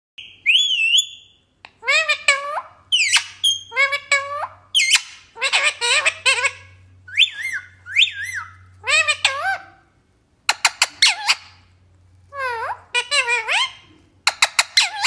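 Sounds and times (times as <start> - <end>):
parrot whistling: 0.2 - 9.8
parrot squawking mimicked speech: 1.7 - 9.9, 12.3 - 15.0.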